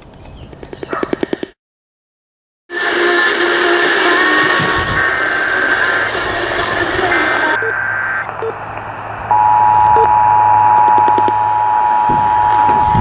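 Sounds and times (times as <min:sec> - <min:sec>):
radio static: 0:02.8 - 0:13.0
low hum: 0:03.1 - 0:13.0
buzzy digital data squawk: 0:04.2 - 0:10.1
two-tone attention signal: 0:07.4 - 0:08.6, 0:09.3 - 0:13.0.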